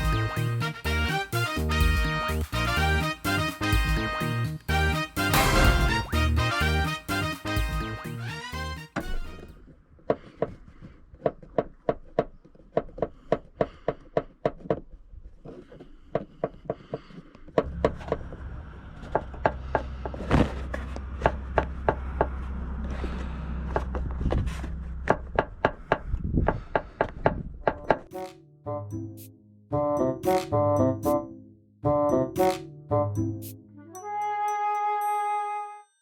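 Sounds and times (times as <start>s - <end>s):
car engine low drone: 17.6s - 26.2s.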